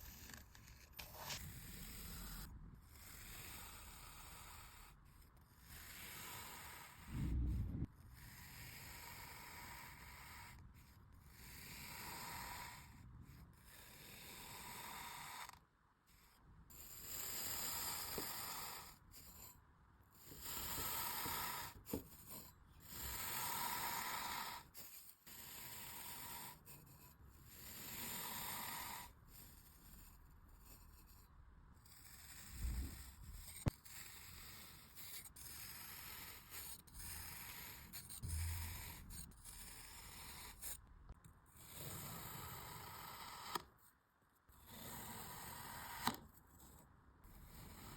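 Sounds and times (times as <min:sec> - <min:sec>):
sand being cut: 0:05.7 - 0:07.1, 0:22.9 - 0:24.7, 0:33.8 - 0:40.7.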